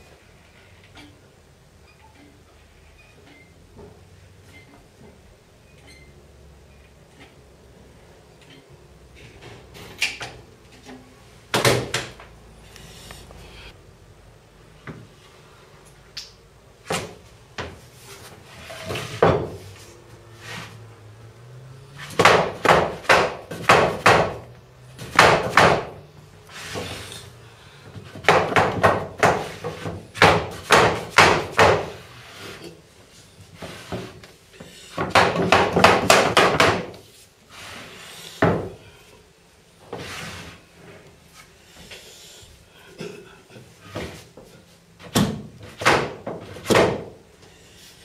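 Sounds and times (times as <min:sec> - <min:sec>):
hammer blows on wooden floorboards: 0:22.0 - 0:24.4, 0:27.9 - 0:32.0, 0:34.9 - 0:37.0.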